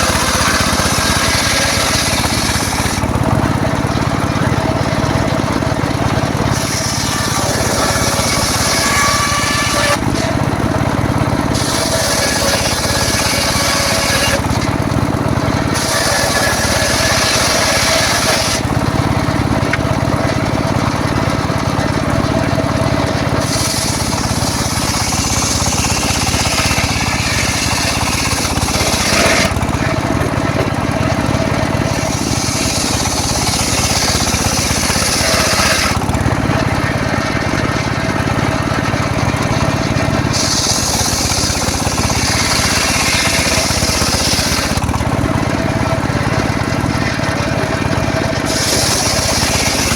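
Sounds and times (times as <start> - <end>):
circular saw running: 0.0 - 49.9
saw blade hissing through wood: 23.4 - 29.6, 31.9 - 36.0, 40.3 - 44.8, 48.4 - 49.9.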